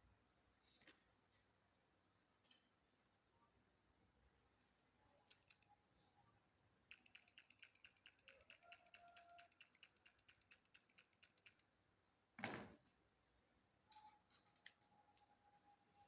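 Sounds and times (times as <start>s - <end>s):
faint rapid clicking: 6.9s - 11.7s.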